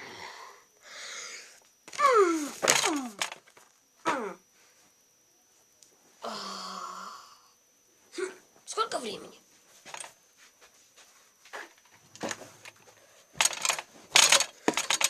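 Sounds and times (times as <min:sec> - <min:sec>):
person exhaling breathily: 0:00.0 - 0:01.6
person groaning: 0:02.0 - 0:03.2, 0:04.1 - 0:04.4, 0:06.2 - 0:07.5
person humming low: 0:02.0 - 0:03.2, 0:04.0 - 0:04.4, 0:06.2 - 0:07.5.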